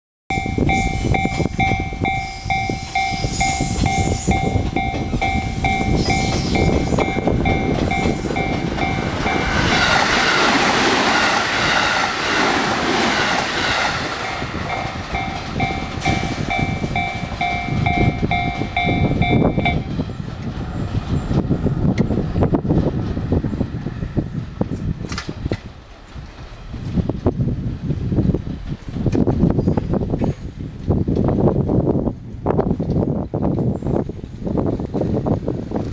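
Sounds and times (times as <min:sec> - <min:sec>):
level crossing bell dinging: 0:00.3 - 0:09.5, 0:14.2 - 0:20.0
train passing with rushing rumble: 0:00.3 - 0:35.9.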